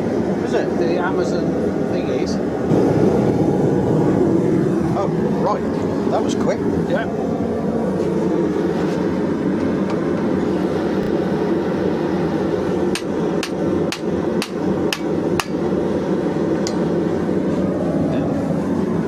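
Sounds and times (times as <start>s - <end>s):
forge rushing noise: 0.0s - 19.0s
hammer striking steel on anvil: 12.9s - 15.6s.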